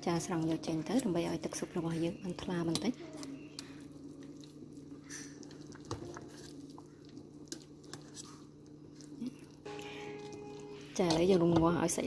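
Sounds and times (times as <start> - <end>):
low steady hum: 0.0 - 12.0
spoon skimming broth: 2.7 - 11.6.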